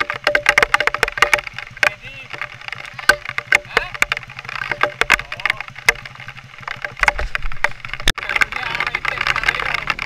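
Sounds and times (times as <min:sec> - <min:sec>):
engine running at low revs: 0:00.0 - 0:10.0
sharp clicks and knocks: 0:00.0 - 0:10.0.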